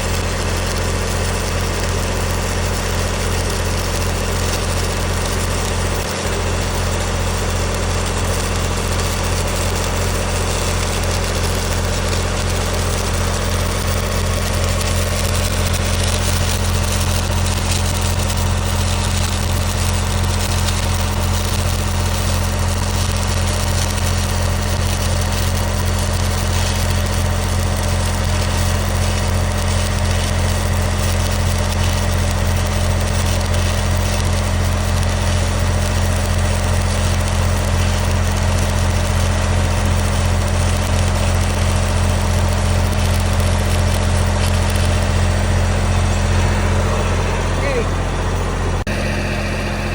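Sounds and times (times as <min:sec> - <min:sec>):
welding arc crackling: 0:00.0 - 0:49.9
welding machine low hum: 0:00.0 - 0:49.9.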